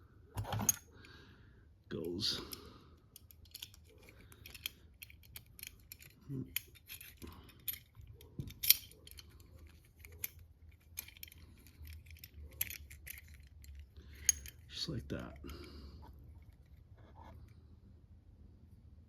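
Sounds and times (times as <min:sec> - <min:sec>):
light metallic rattles: 0:03.1 - 0:15.7.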